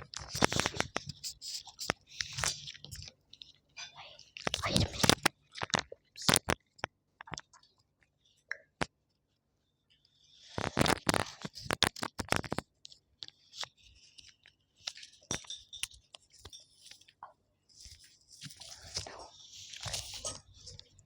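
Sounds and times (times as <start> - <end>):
crackly chewing: 0.0 - 9.0, 9.9 - 21.0
dense crunching and scraping: 17.8 - 21.0.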